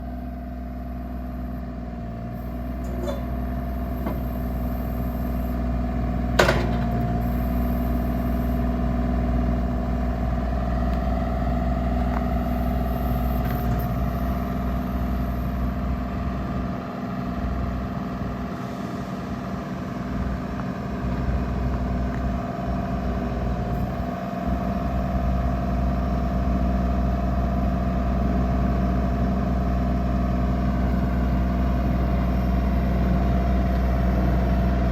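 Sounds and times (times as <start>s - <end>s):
diesel engine running: 0.0s - 34.9s
sharp metal clank: 2.8s - 4.2s, 6.4s - 7.0s.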